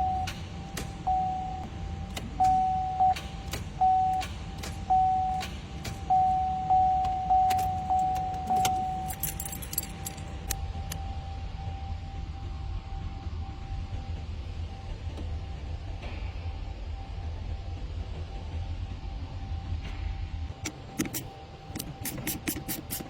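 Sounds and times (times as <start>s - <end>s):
car warning chime: 0.0s - 0.4s, 1.0s - 1.7s, 2.4s - 3.2s, 3.8s - 4.3s, 4.9s - 5.5s, 6.1s - 9.9s.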